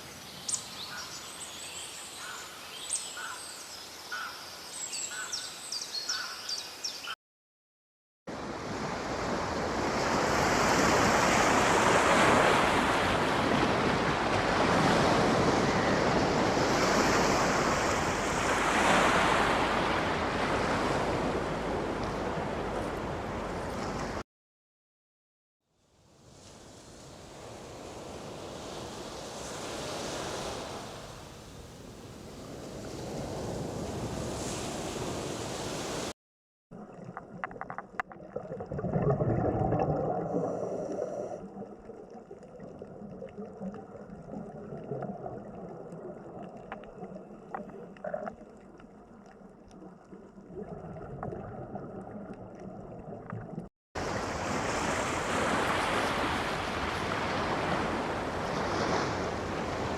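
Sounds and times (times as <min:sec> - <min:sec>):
ocean waves washing: 0:08.3 - 0:24.2, 0:26.5 - 0:36.1, 0:54.0 - 0:59.9.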